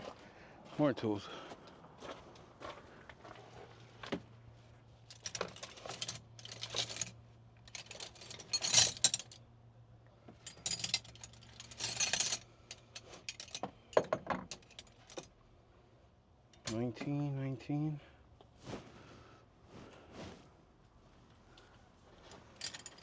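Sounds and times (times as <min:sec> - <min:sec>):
metal tools clinking: 0:05.1 - 0:09.4, 0:10.4 - 0:15.3, 0:22.6 - 0:23.0.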